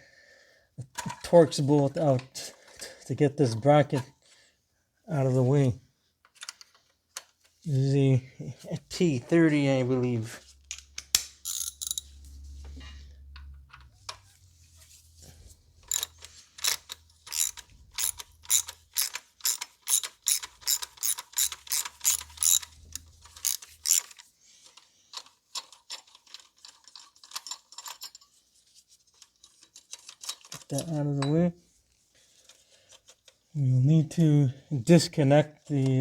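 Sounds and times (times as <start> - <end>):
hand ratchet clicking: 10.7 - 12.1, 15.8 - 24.2.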